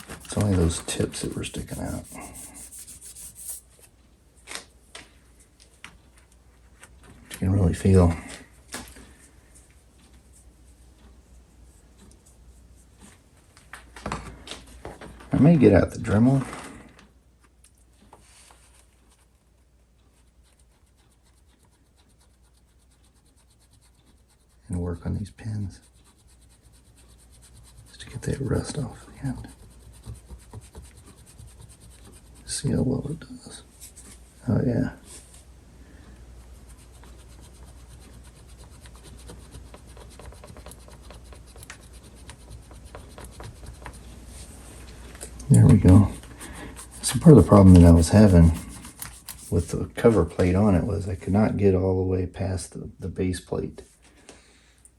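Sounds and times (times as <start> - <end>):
scratching on small metal parts: 45.5 - 49.8.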